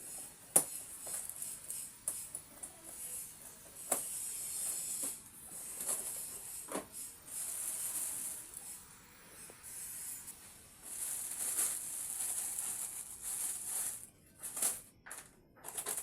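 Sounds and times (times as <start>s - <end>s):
plastic bag rustling and crinkling: 4.7s - 8.8s, 9.4s - 16.0s.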